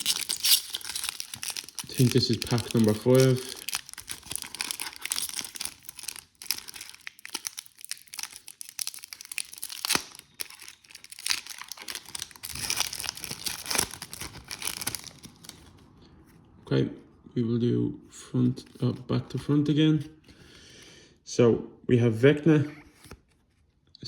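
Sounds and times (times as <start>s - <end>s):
wrapper being torn and crinkled: 0.0s - 15.7s.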